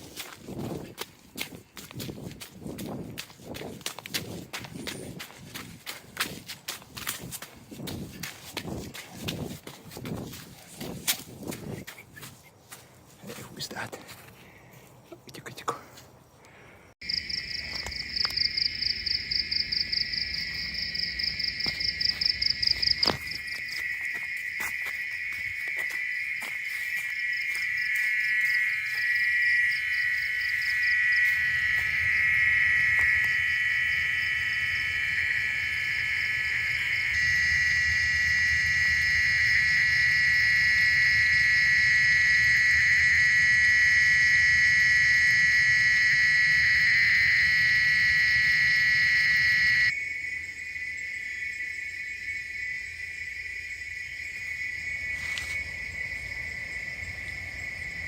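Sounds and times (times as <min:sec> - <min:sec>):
tree frogs trilling: 0:17.0 - 0:58.0.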